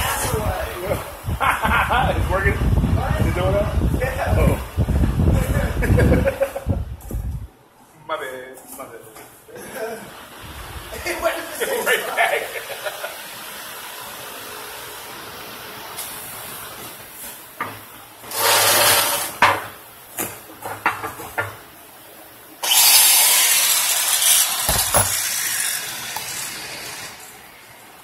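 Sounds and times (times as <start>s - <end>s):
loud air hissing: 18.3s - 19.4s.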